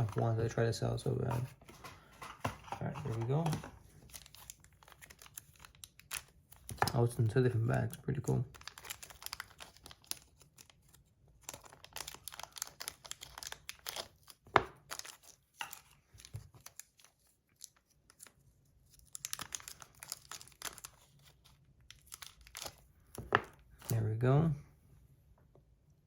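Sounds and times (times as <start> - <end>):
packaging bags crinkling: 8.4 - 18.3, 19.0 - 24.0.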